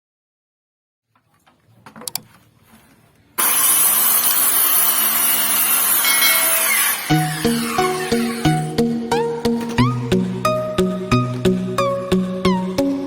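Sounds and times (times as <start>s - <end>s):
power tool cutting wood: 3.4s - 11.6s
music with plucked notes: 7.4s - 13.0s.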